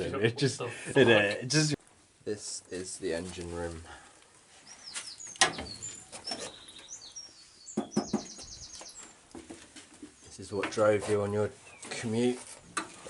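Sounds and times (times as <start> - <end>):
small birds chirping: 2.4 - 12.4
sharp knocks: 7.8 - 8.5.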